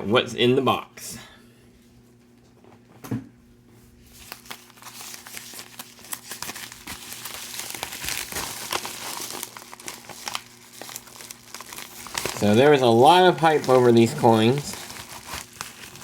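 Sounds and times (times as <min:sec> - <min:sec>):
packing material crinkling: 0:04.0 - 0:16.0.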